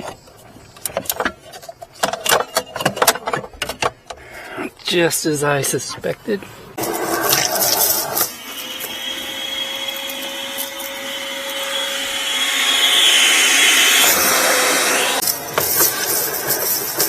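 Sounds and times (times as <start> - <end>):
vacuum cleaner running: 6.8 - 17.0.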